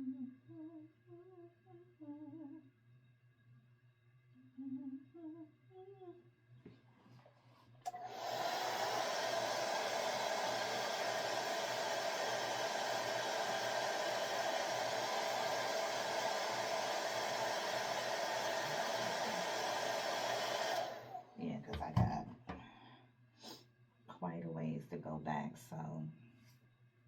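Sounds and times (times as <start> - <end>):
hair dryer blowing: 7.9 - 21.3.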